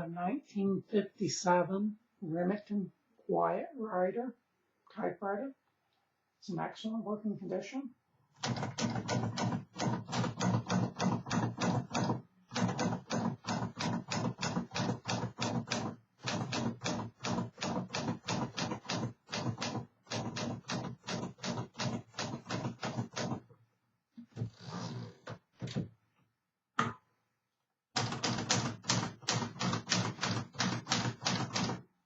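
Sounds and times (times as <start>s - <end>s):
manual typewriter key strikes: 28.0s - 31.8s.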